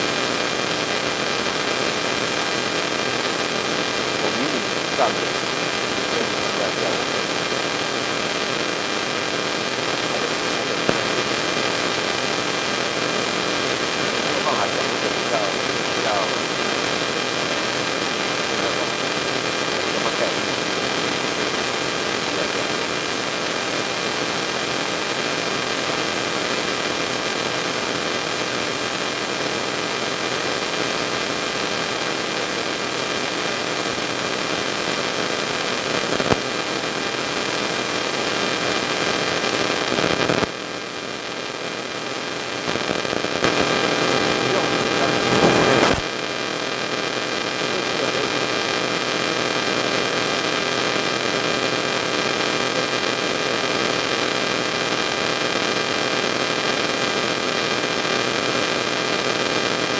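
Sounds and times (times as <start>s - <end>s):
steady hiss: 4.1s - 21.6s.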